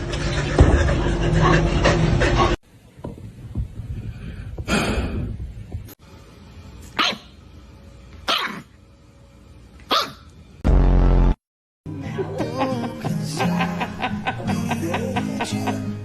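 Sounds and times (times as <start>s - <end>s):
loud pitched sound: 10.6s - 11.4s.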